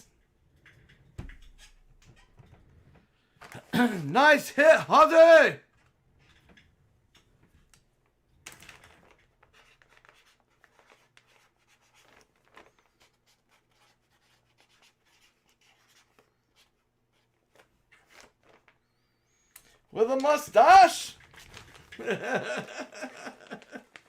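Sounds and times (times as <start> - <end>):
hands rustling packaging: 20.0 - 24.0.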